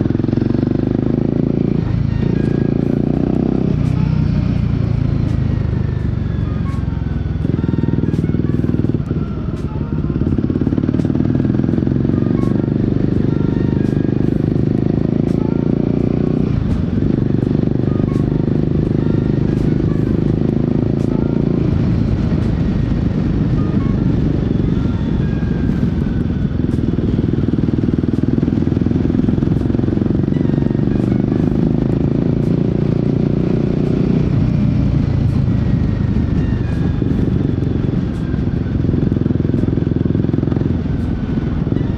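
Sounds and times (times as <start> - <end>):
motorcycle engine and exhaust: 0.0 - 41.9.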